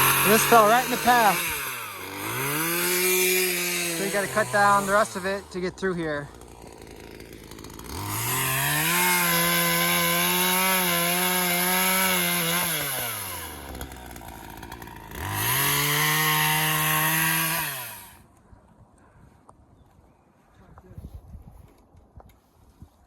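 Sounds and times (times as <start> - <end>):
chainsaw cutting wood: 0.0 - 18.3.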